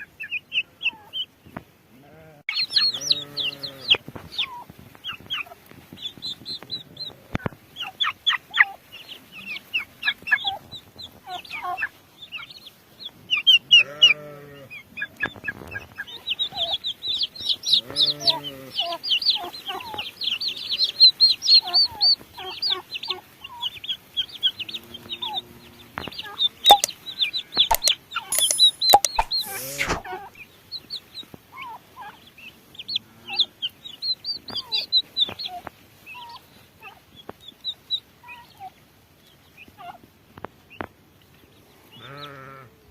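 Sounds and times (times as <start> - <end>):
turkey clucking calls: 0.0 - 1.4, 2.5 - 38.8
poults peeping: 0.0 - 42.9
sharp clicks: 26.7 - 26.9, 27.7 - 30.0.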